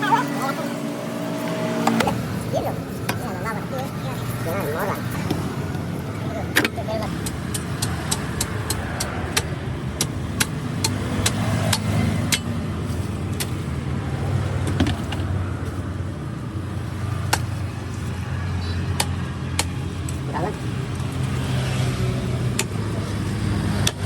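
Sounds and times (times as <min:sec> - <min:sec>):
engine running with low hum: 0:00.0 - 0:24.0
sharp clicks and knocks: 0:06.5 - 0:12.6, 0:13.3 - 0:13.6, 0:18.9 - 0:20.2.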